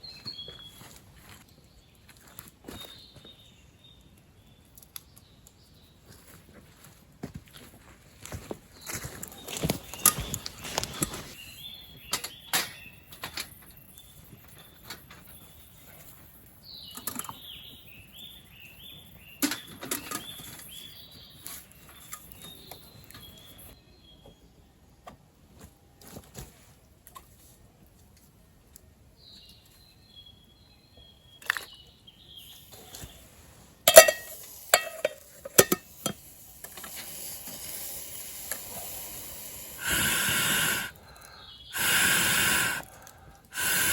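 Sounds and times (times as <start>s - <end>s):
small bird chirping: 8.8s - 24.3s
cookware clinking and knocking: 33.9s - 35.9s.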